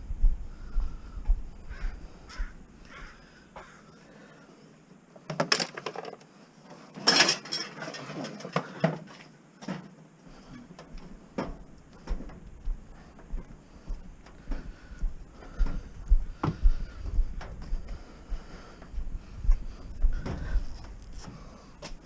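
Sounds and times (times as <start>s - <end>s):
crow cawing: 1.6s - 4.5s
metal scrap clattering: 7.0s - 8.9s.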